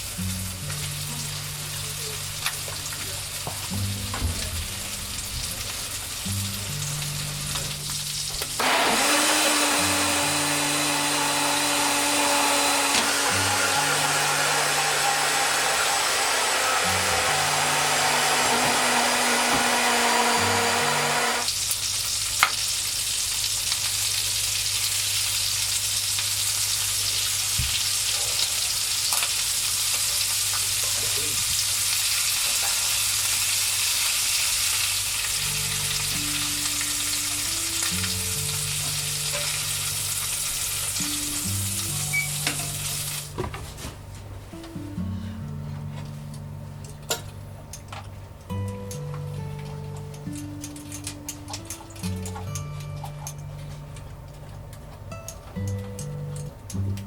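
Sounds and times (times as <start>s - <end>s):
chicken sizzling in a pan: 0.0s - 8.6s, 21.5s - 43.4s.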